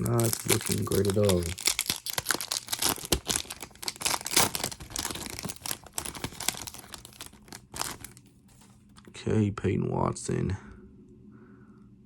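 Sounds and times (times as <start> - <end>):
wrappers tearing and crinkling: 0.0 - 8.2.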